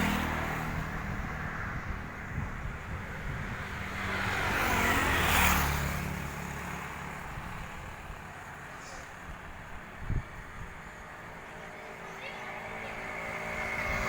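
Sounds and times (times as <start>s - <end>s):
vehicle passing by: 0.0s - 14.0s.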